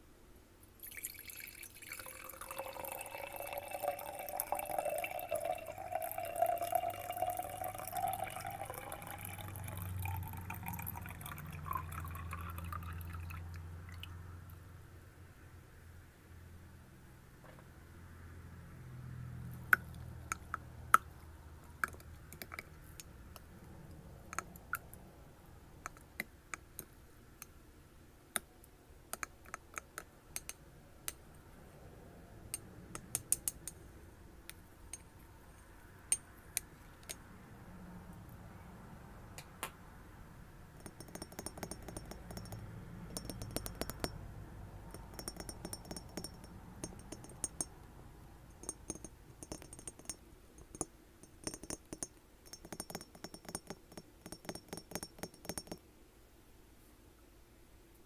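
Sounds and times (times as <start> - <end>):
glass tapping and clinking: 0.8 - 13.4, 40.8 - 44.2, 44.9 - 47.8, 48.5 - 55.8.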